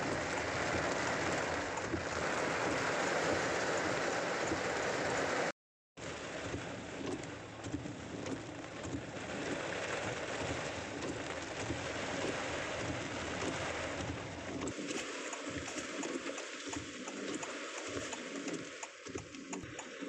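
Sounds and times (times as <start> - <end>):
heavy rain pouring: 0.0 - 18.6.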